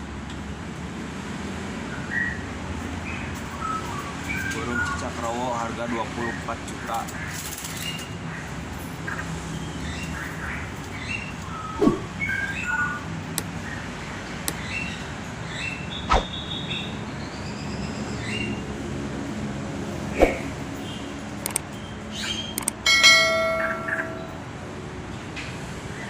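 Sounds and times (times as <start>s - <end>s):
caged birds chirping and whistling: 2.0s - 18.8s, 20.1s - 22.7s
sharp click: 21.4s - 22.8s.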